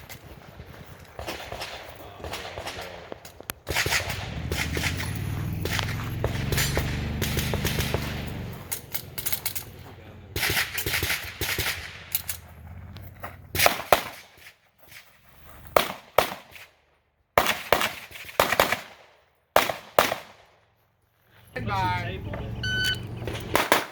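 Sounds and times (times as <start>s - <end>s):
gunshots: 1.1s - 9.7s, 10.4s - 12.4s, 13.5s - 14.5s, 15.8s - 16.7s, 17.4s - 20.5s, 23.2s - 23.9s.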